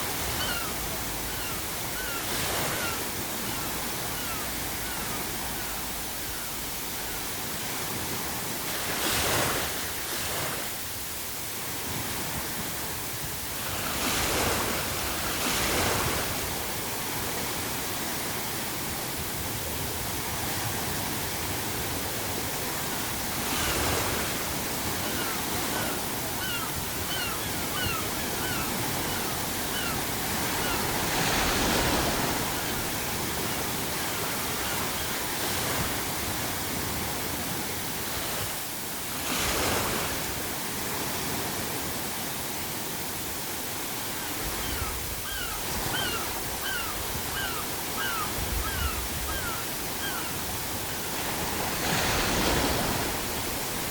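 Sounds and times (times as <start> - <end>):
gulls calling: 0.0 - 7.3, 23.4 - 35.8, 44.3 - 53.1
sea surf washing: 0.0 - 53.9.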